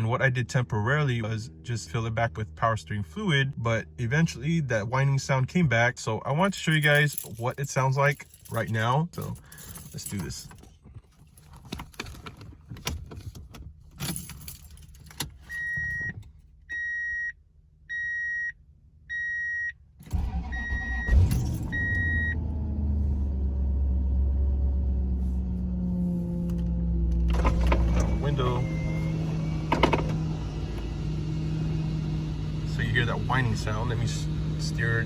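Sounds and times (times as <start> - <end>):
keys jangling: 6.5 - 12.3, 13.9 - 15.5
dashboard warning chime beeping: 15.5 - 22.4, 27.3 - 31.2
car engine starting and idling: 19.9 - 35.0
power steering pump whine: 20.0 - 35.0.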